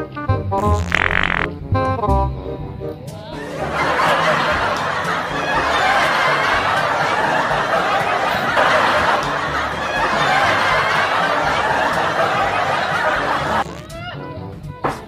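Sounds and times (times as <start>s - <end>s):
crowd laughing and chattering: 3.4s - 13.9s.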